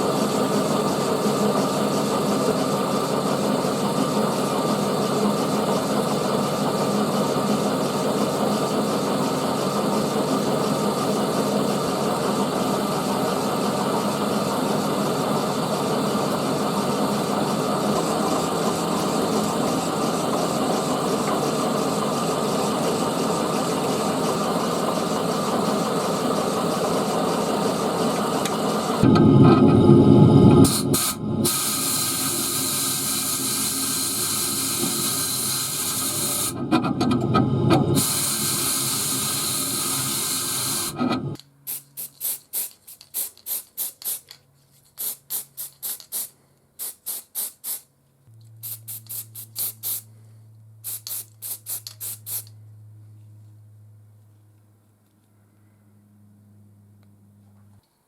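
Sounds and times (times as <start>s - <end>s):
machine motor running: 0.0s - 41.4s.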